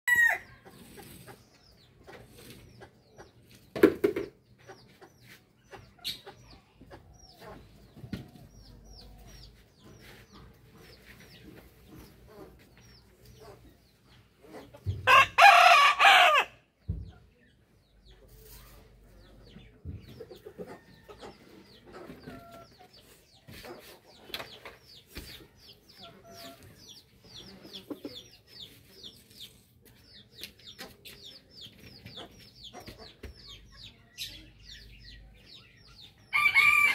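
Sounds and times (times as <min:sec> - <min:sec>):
chicken clucking: 0:00.1 - 0:36.8
rooster crowing: 0:15.1 - 0:16.6, 0:36.3 - 0:36.9.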